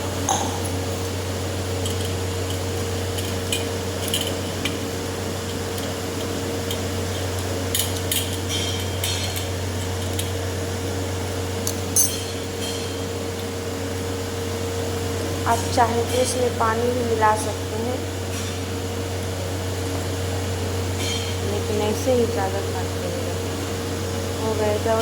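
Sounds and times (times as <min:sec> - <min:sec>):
low hum: 0:00.0 - 0:05.2.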